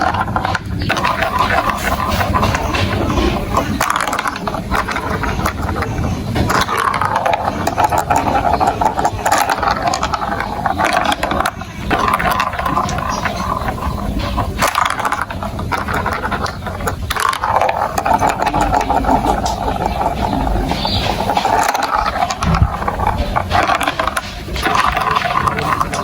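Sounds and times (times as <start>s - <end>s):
marbles rattling on plastic track: 0.0s - 26.0s.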